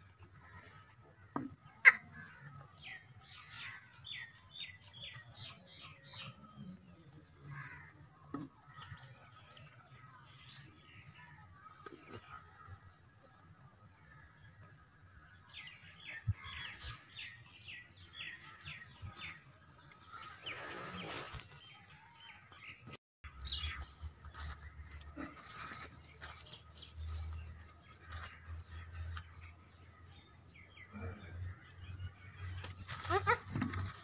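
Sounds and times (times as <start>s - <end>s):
rustling noise: 20.1s - 21.8s, 24.2s - 28.5s.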